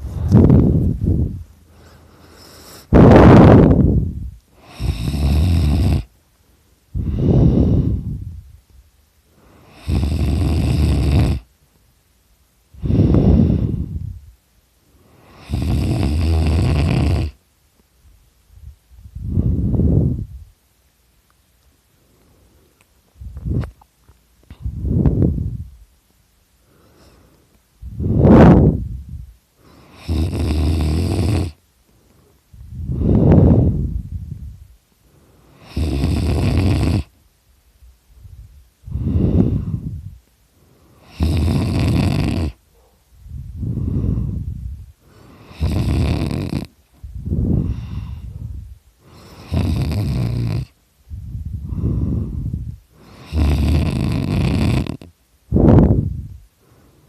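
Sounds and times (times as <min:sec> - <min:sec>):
person snoring loudly: 0:04.6 - 0:06.1, 0:09.6 - 0:11.5, 0:15.2 - 0:17.4, 0:29.7 - 0:31.6, 0:35.6 - 0:37.1, 0:41.0 - 0:42.6, 0:45.2 - 0:46.8, 0:49.1 - 0:50.8, 0:53.0 - 0:55.1.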